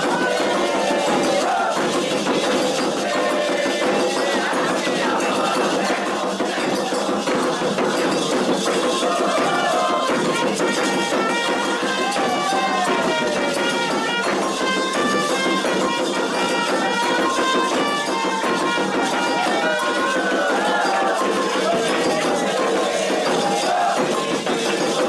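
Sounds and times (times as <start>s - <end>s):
bugle short repeated notes: 0.0s - 2.0s, 9.0s - 24.4s
hand drums and percussion: 0.0s - 25.0s.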